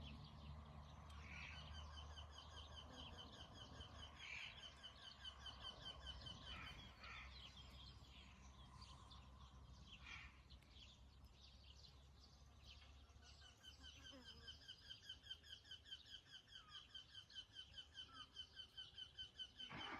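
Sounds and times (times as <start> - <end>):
bird calls: 1.1 - 9.2, 12.6 - 19.9.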